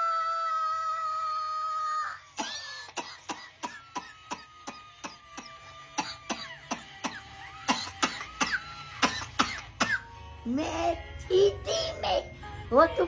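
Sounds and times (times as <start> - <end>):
rhythmic coughs: 2.3 - 10.2.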